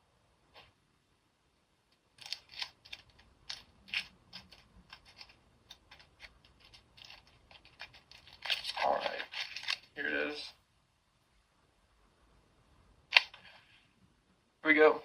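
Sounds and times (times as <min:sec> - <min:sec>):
plastic packaging crinkling: 0:02.2 - 0:10.0.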